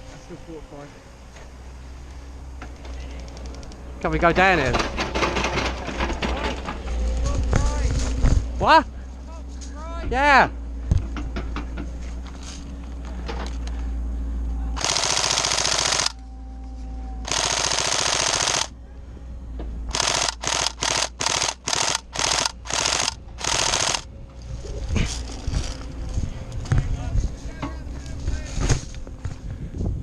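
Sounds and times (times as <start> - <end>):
airsoft gun firing bursts: 14.8 - 16.2, 17.3 - 18.7, 19.9 - 24.0.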